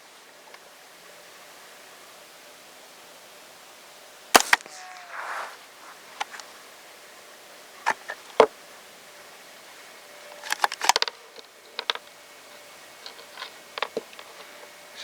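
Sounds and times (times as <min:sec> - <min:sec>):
rifle shots cracking: 0:04.4 - 0:05.5.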